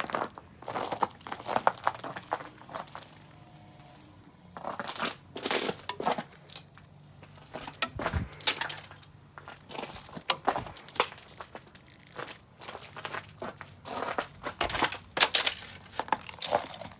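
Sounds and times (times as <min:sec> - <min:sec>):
ice crunching and cracking: 0:04.6 - 0:16.9.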